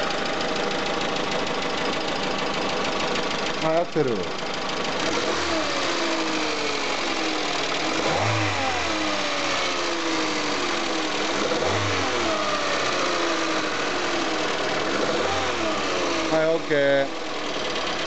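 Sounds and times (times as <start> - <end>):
car engine revving: 4.8 - 18.0.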